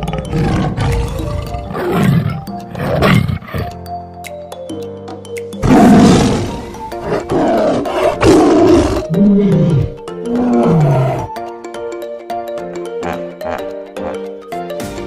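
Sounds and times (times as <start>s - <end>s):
big cat roaring: 0.0s - 3.7s, 5.6s - 11.3s
background music: 0.0s - 15.0s.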